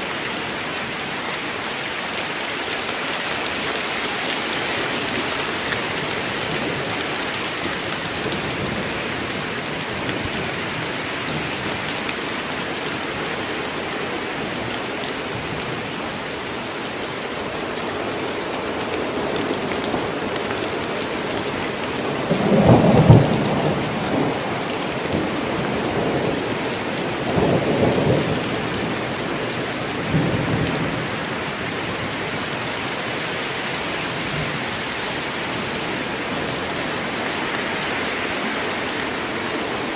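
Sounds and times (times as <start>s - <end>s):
heavy rain on foliage: 0.0s - 39.9s
thunder rumbling: 21.1s - 32.2s.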